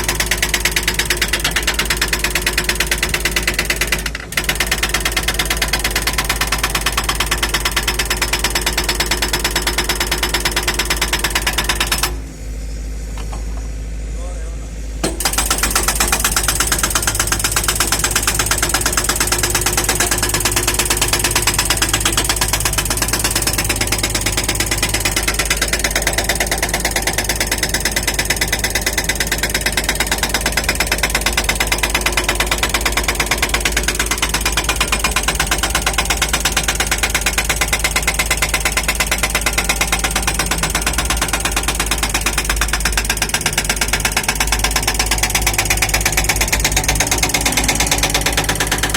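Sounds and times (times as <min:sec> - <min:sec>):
hydraulic hammer pounding ground: 0:00.0 - 0:12.2, 0:15.0 - 0:48.9
low engine drone: 0:46.1 - 0:48.9.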